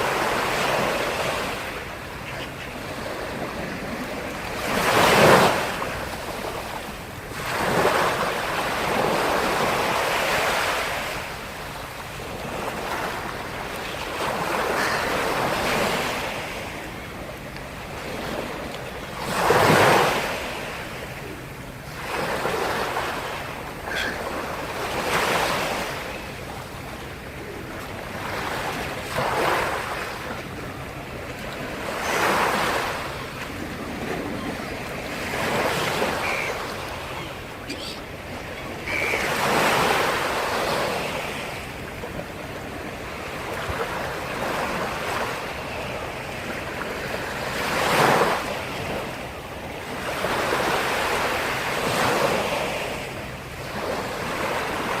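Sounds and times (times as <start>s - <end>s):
waves breaking on shore: 0.0s - 55.0s.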